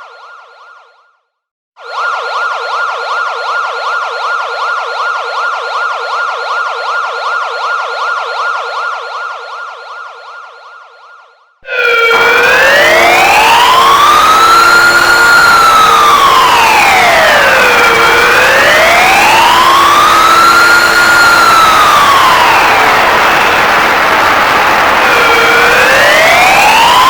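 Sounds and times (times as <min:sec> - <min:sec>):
fast warbling siren: 0:01.8 - 0:27.0
slow wailing siren: 0:01.8 - 0:27.0.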